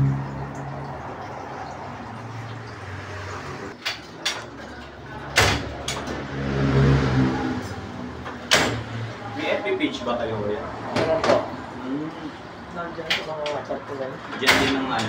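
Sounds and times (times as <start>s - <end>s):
vehicle engine: 0.0s - 3.8s, 5.0s - 9.4s.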